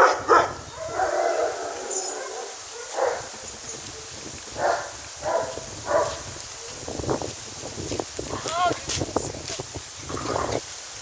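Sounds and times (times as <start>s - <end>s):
small dog barking: 0.0s - 3.3s, 4.6s - 6.2s.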